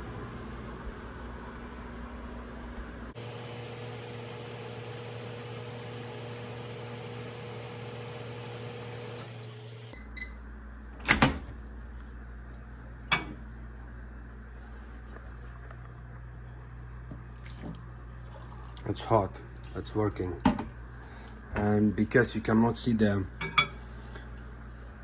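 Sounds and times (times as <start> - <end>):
microwave humming: 0.0 - 25.0
microwave beeps: 5.3 - 10.4.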